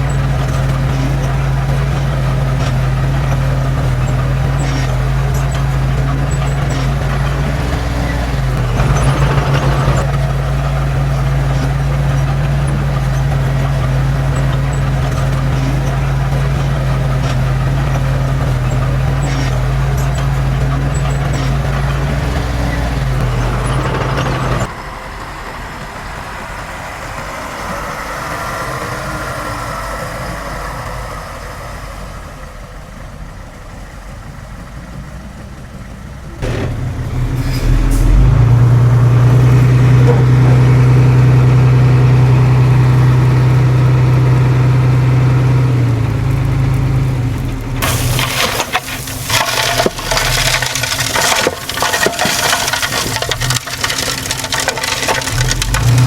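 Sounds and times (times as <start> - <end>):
crackling and clattering: 0.0 - 24.7, 45.8 - 56.0
heavy machinery diesel engines: 0.0 - 56.0.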